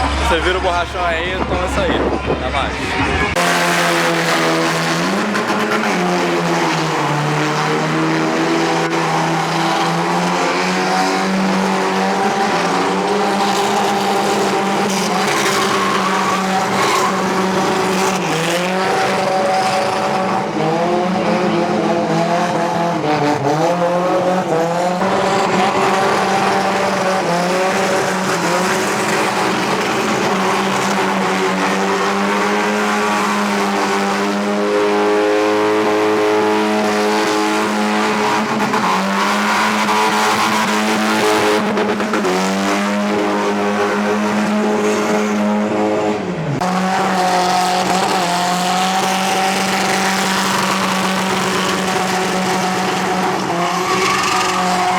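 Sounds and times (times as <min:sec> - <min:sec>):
car engines revving: 0:00.0 - 0:54.9
tyres squealing: 0:08.7 - 0:20.3, 0:52.9 - 0:54.9.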